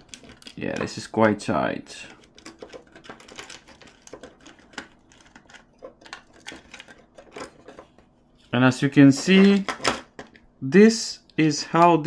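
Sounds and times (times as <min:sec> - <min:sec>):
small plastic parts handled: 0:00.0 - 0:01.1, 0:02.1 - 0:08.0.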